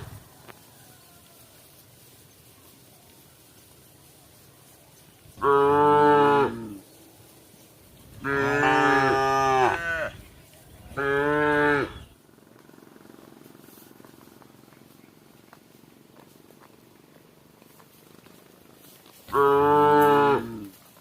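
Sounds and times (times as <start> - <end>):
cow mooing: 5.4 - 6.8, 8.2 - 10.2, 11.0 - 12.1, 19.3 - 20.7.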